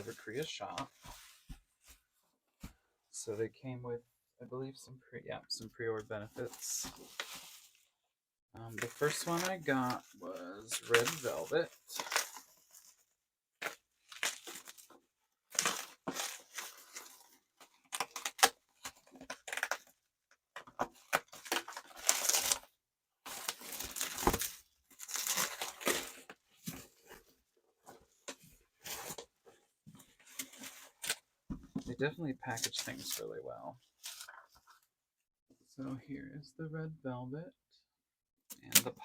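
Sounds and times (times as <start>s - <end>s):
packaging tearing and crinkling: 10.6s - 12.4s, 13.6s - 14.9s, 17.9s - 19.9s, 21.0s - 22.6s, 23.3s - 26.2s.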